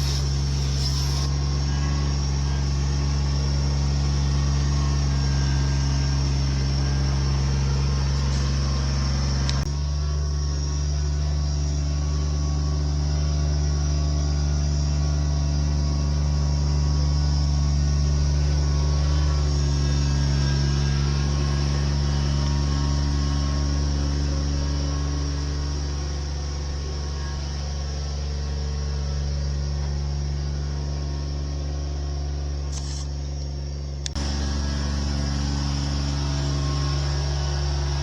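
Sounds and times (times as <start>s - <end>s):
machine engine droning: 0.0s - 38.0s
click: 34.0s - 34.2s.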